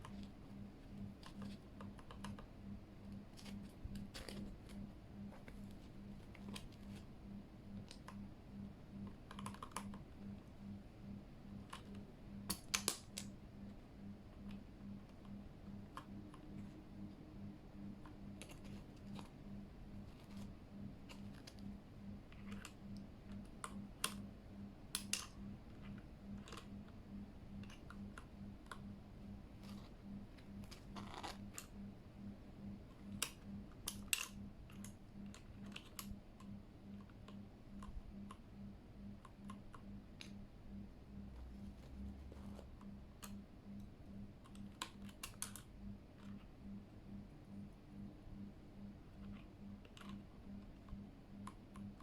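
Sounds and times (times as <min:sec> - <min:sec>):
keyboard keys clicking: 0:09.0 - 0:10.1.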